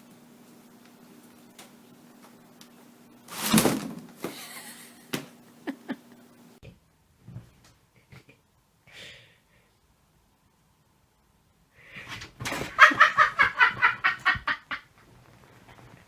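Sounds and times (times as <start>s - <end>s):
faint steady hum: 0.0s - 16.0s
cat landing with a crash: 3.3s - 4.4s.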